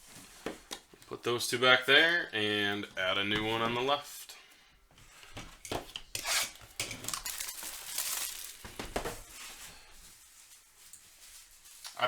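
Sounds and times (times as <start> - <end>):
cardboard packaging crinkling: 6.2 - 12.0.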